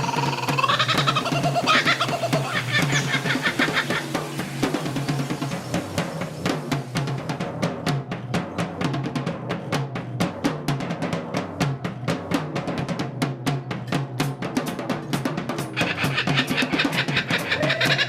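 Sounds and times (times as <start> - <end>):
fast drumming: 0.0 - 18.0.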